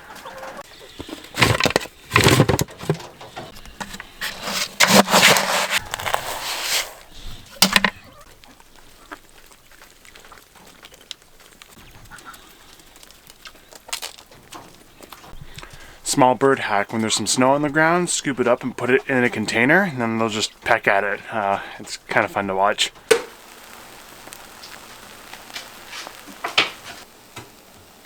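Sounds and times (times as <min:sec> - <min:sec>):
poultry noisy bursts: 0:15.4 - 0:28.0
small clicks: 0:23.0 - 0:27.6.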